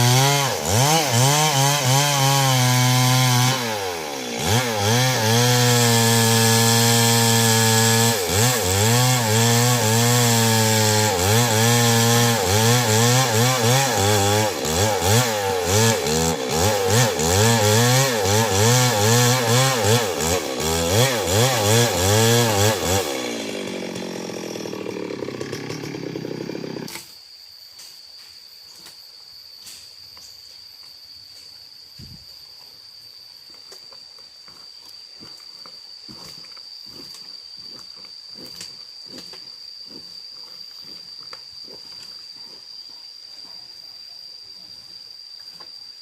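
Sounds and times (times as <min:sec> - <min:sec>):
chainsaw cutting wood: 0:00.0 - 0:27.2
insects chirping: 0:21.8 - 0:46.0.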